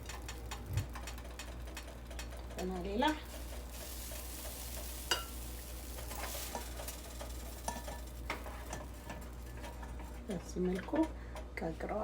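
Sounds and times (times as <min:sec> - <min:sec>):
batter sizzling on a pan: 0:00.0 - 0:10.6
utensil clink: 0:03.6 - 0:10.0.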